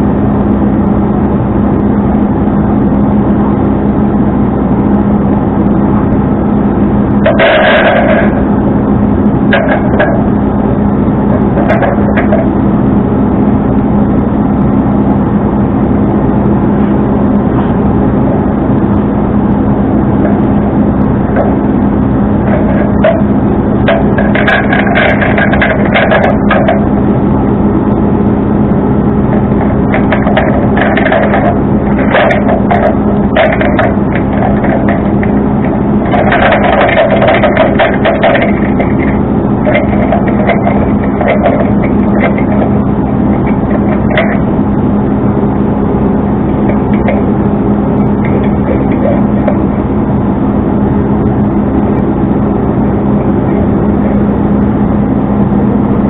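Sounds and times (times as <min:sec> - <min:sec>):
truck engine droning: 0:00.0 - 0:56.0
rattling and clicking: 0:07.1 - 0:08.6, 0:09.2 - 0:10.4, 0:11.2 - 0:12.6, 0:19.5 - 0:21.8, 0:22.4 - 0:26.9, 0:29.3 - 0:44.6, 0:46.5 - 0:49.9.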